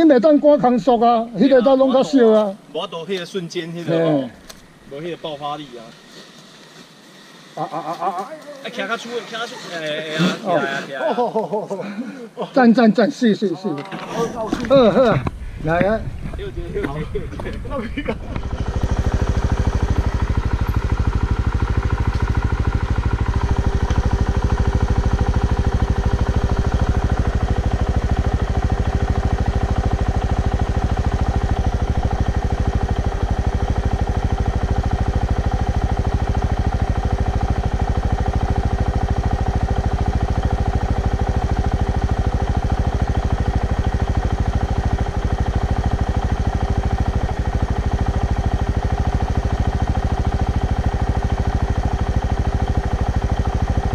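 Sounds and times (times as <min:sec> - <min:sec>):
motorcycle engine running: 0:14.4 - 0:53.9.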